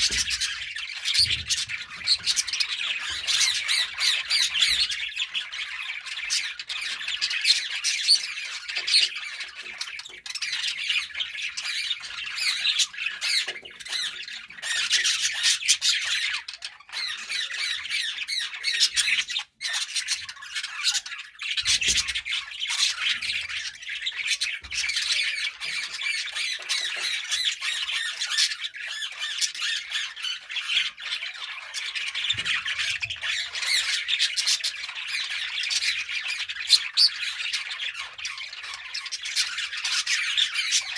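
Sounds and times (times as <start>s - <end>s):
budgerigars chirping: 0.0s - 40.9s.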